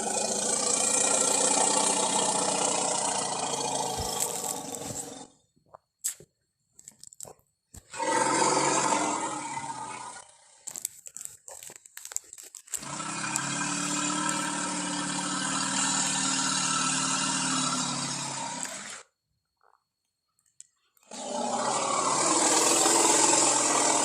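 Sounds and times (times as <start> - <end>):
crackling clicks: 10.6 - 14.5.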